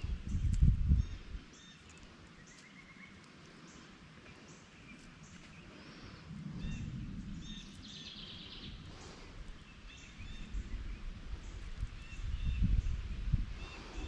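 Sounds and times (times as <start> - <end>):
songbirds chirping: 0.0 - 14.0
low rumble: 5.8 - 14.0.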